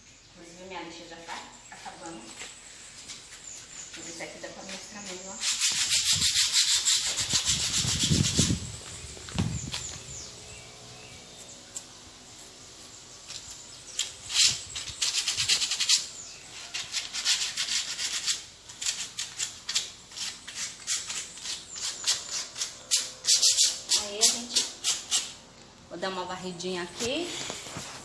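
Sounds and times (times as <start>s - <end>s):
sandpaper rubbing on bricks: 1.7s - 8.8s, 11.4s - 25.4s, 26.8s - 28.0s.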